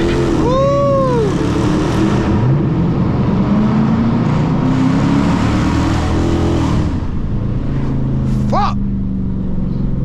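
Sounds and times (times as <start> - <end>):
car engine and exhaust: 0.0 - 10.0
road and tyre noise: 0.0 - 10.0.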